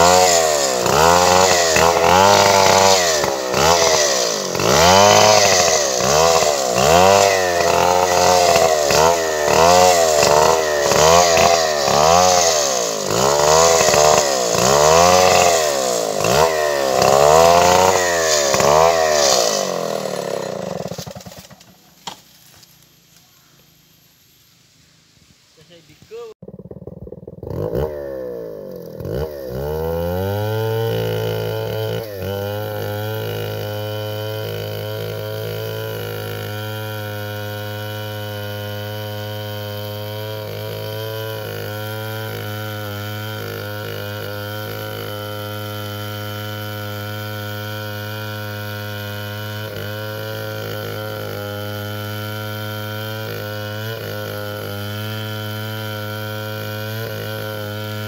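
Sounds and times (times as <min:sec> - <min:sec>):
chainsaw engine running: 0:00.0 - 0:23.7, 0:25.7 - 0:58.0.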